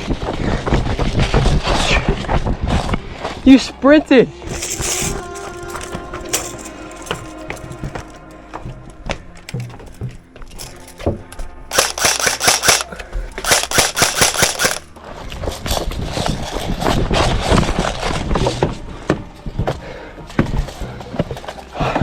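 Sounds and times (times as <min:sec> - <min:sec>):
rapid airsoft gunfire: 0:11.7 - 0:14.8.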